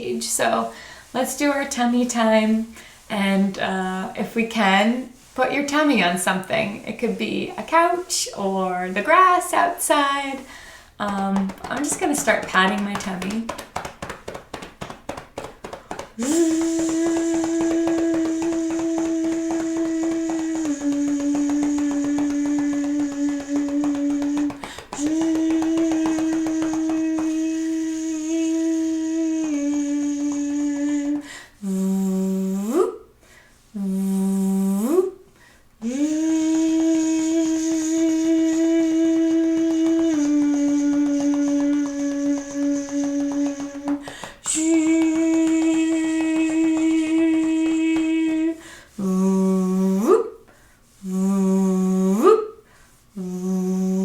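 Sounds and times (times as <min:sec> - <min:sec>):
woman breathing: 0:00.7 - 0:01.2, 0:02.7 - 0:03.1, 0:10.4 - 0:11.0, 0:24.6 - 0:25.0, 0:31.2 - 0:31.7, 0:44.0 - 0:44.4, 0:48.6 - 0:49.0, 0:50.5 - 0:51.0, 0:52.6 - 0:53.2
woman holding wordless note: 0:07.5 - 0:31.4
hand patting tummy: 0:10.4 - 0:31.4, 0:35.8 - 0:48.6.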